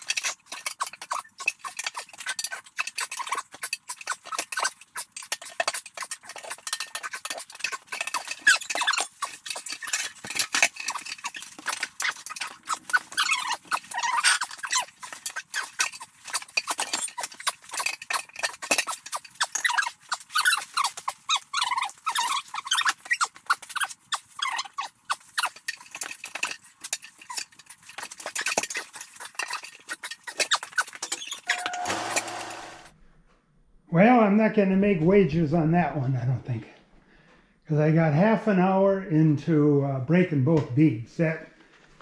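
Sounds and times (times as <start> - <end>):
rubber squeaks: 0.0 - 32.9
metal tire irons clinking: 25.2 - 32.9.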